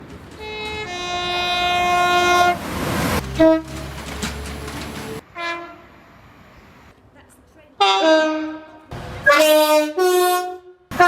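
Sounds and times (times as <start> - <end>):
train rushing past: 0.0 - 6.9
train horn: 0.4 - 2.6, 3.3 - 3.8, 5.3 - 5.9, 7.8 - 11.0.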